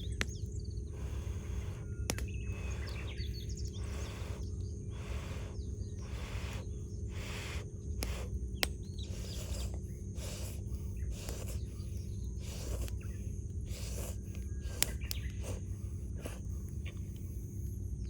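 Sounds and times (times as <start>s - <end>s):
small birds chirping: 0.0s - 18.0s
steady low rumble: 0.0s - 18.0s.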